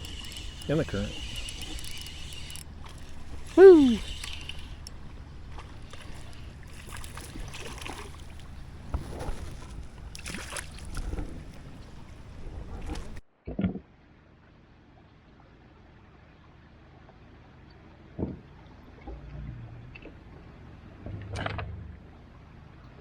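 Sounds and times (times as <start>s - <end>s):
water splashing: 0.0s - 13.2s
wind rumbling on microphone: 0.0s - 13.2s.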